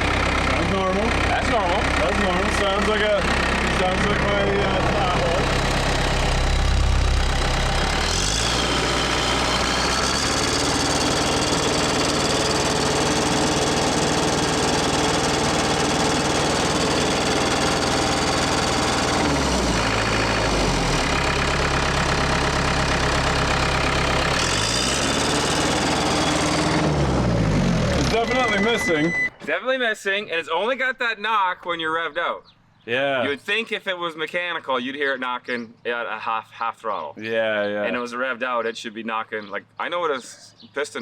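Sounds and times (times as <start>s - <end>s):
diesel engine revving with knock: 0.0s - 29.3s.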